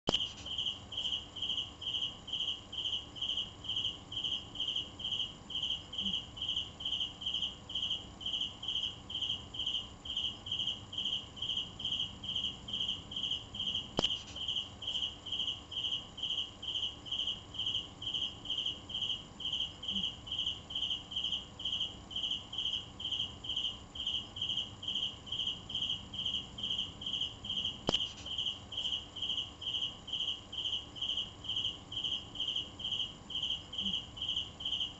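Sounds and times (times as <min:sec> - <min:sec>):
cricket chirping: 0:00.1 - 0:34.9
brief clicks: 0:14.0 - 0:14.4.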